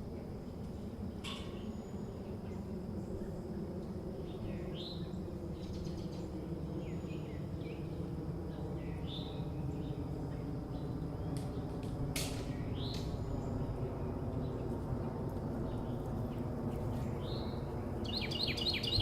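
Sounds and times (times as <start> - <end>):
faint high whine: 0.0 - 19.0
birds chirping: 12.5 - 19.0.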